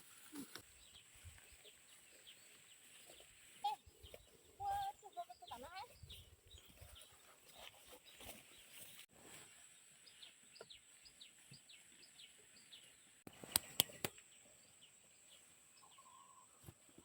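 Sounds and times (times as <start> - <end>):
sharp clicks: 13.4 - 14.2.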